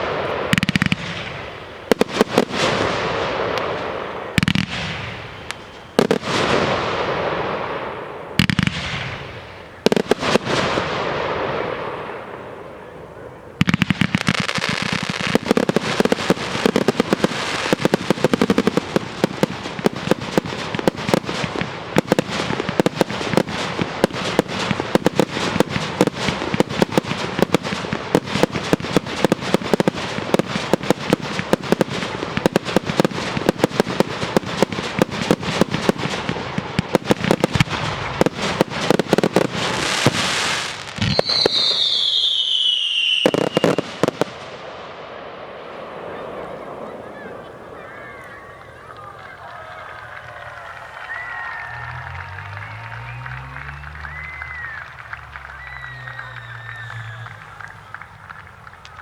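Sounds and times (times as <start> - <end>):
fireworks bangs and crackling: 0.0 - 59.0
falling firework whistle: 22.0 - 44.3, 45.7 - 59.0.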